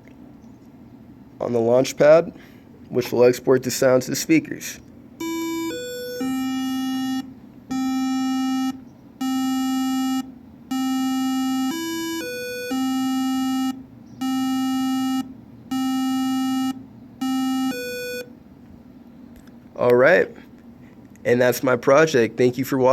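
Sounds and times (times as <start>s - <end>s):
buzzy electronic ringtone beeps: 5.2s - 18.3s.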